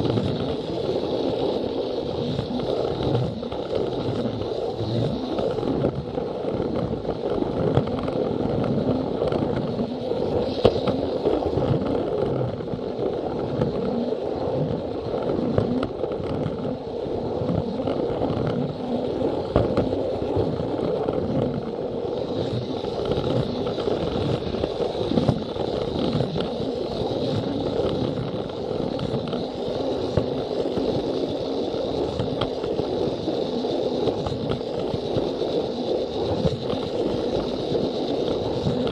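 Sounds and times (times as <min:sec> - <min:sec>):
thin high whine: 0:00.0 - 0:38.9.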